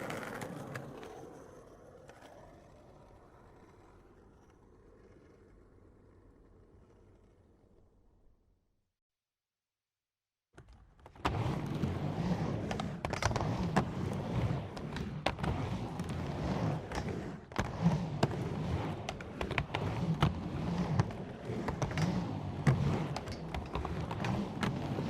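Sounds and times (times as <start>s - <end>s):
skateboard sharp clacks: 0.0s - 2.5s
skateboard wheels rumbling: 0.0s - 8.6s, 10.6s - 25.0s.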